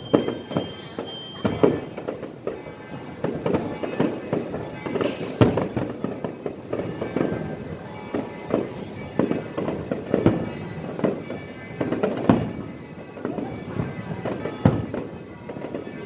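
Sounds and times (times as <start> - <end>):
fireworks bangs and crackles: 0.0 - 16.0.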